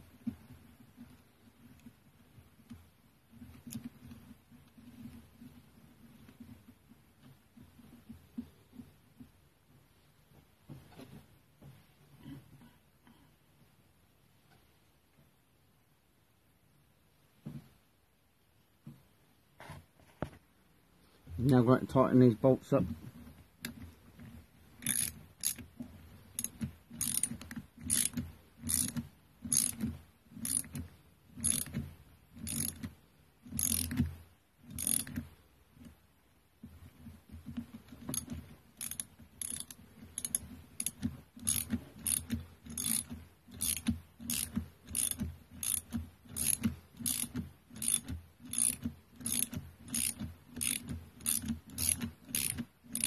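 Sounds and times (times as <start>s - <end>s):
ratchet wrench clicking: 24.8s - 25.7s, 26.3s - 35.3s, 38.0s - 53.0s.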